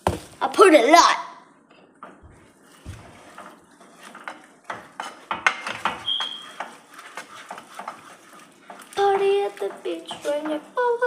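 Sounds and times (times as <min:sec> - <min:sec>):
utensil scraping cookware: 0:02.5 - 0:11.0
high squeak: 0:06.0 - 0:06.6.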